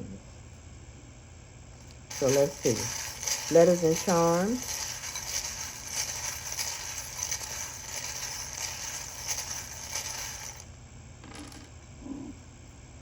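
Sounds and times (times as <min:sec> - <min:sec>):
small charms rattling: 0:02.1 - 0:10.7.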